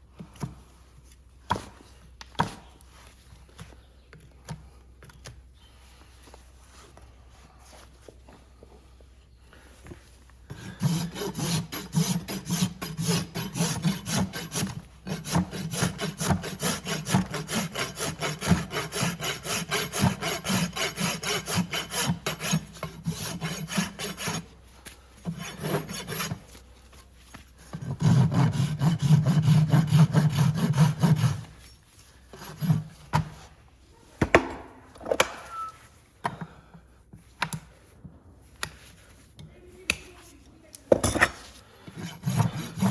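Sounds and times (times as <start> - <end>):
rasp scraping hoof: 10.5 - 24.6, 41.3 - 42.9.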